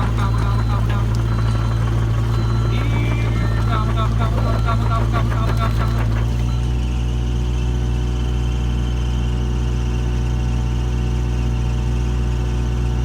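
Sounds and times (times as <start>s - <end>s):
diesel excavator engine idling: 0.0s - 13.0s.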